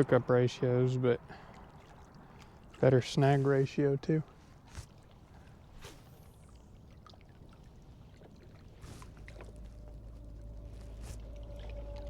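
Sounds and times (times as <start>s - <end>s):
distant motorboat engine: 5.5s - 12.0s.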